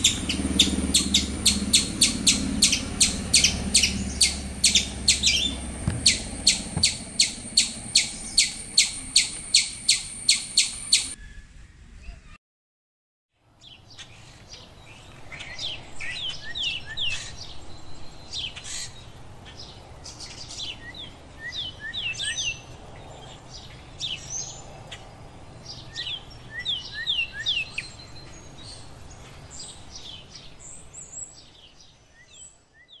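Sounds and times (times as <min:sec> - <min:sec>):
birds chirping: 0:00.0 - 0:11.2.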